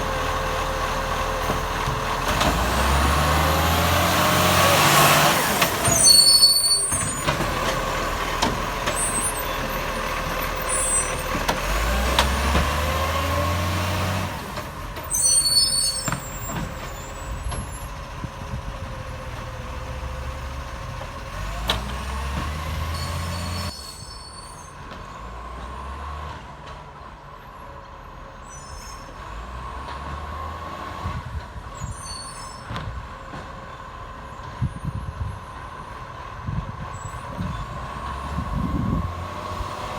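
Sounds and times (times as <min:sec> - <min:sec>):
garbage truck engine running: 0:00.0 - 0:23.8.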